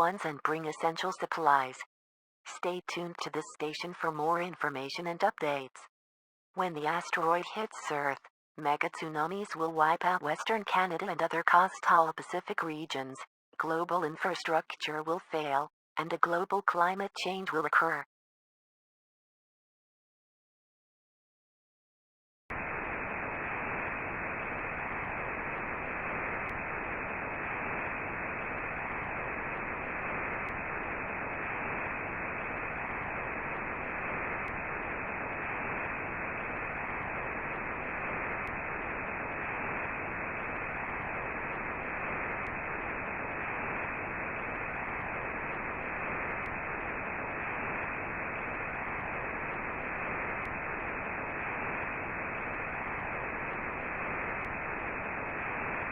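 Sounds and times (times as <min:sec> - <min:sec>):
muffled radio static hiss: 0:22.5 - 0:55.9.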